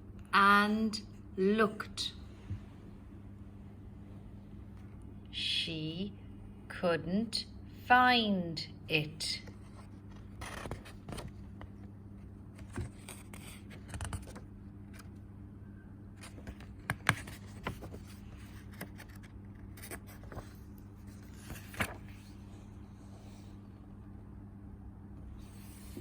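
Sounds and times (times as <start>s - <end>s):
low electrical hum: 0.0s - 26.0s
clicks and scrapes from book handling: 9.5s - 11.8s, 12.5s - 15.1s, 16.2s - 22.6s.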